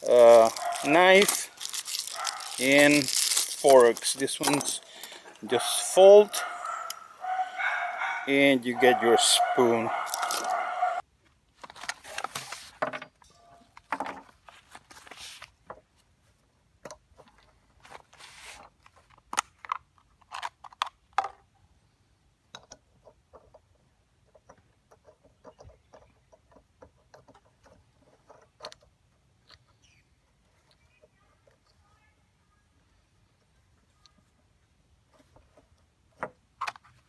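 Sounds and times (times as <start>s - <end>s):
gear rustling: 0.0s - 11.0s
metal clicks and clinks: 0.0s - 11.0s
small ticks: 6.4s - 8.3s.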